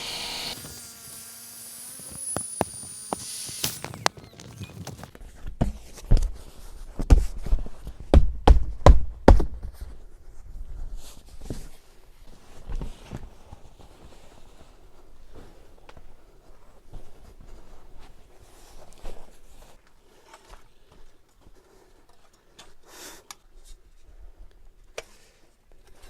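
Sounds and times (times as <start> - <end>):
sharp knocks and thuds: 7.0 - 9.8.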